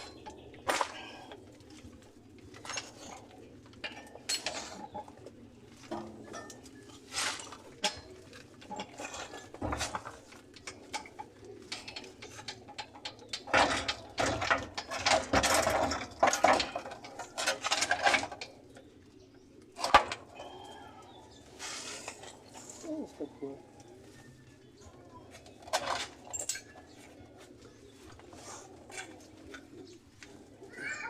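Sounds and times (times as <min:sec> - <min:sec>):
birds cooing: 0:00.0 - 0:13.6, 0:18.4 - 0:25.8, 0:26.6 - 0:31.0
hand tools scraping and knocking: 0:02.4 - 0:18.6, 0:19.8 - 0:23.2, 0:25.3 - 0:30.4.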